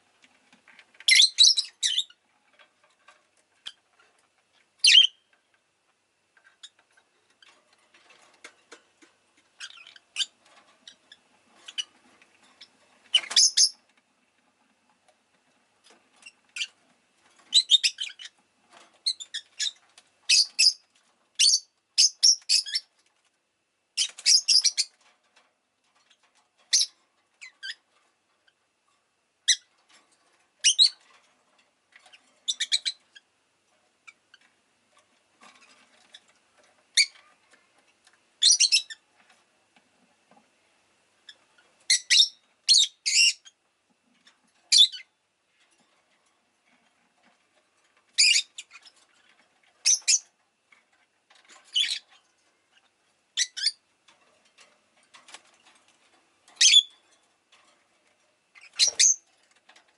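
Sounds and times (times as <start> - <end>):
lovebird shrill chirps: 4.8 - 5.2.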